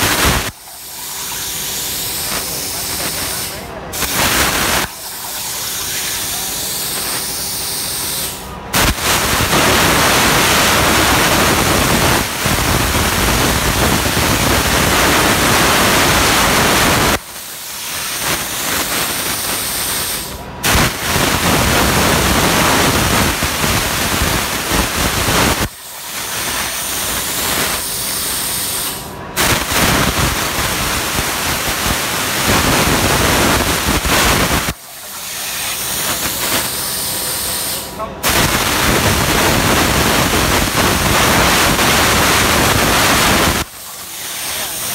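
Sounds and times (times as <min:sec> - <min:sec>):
plasma cutter hissing rush: 0:00.0 - 0:44.9.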